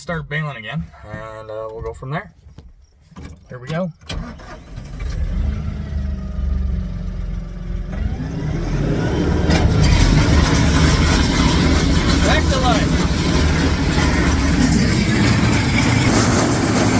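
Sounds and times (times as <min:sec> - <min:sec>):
tractor engine revving: 0:04.1 - 0:16.9
baler clattering: 0:09.6 - 0:16.9.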